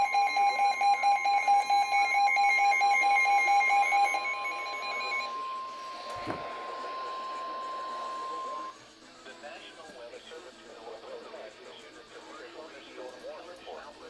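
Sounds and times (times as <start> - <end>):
fast pulsing alarm beeps: 0.0 - 8.8.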